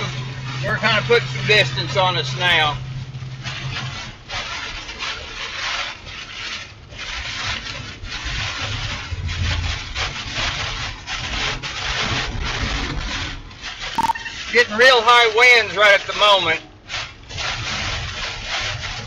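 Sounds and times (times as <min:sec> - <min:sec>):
storm winds buffeting a vehicle: 0:00.0 - 0:05.4, 0:07.8 - 0:13.8.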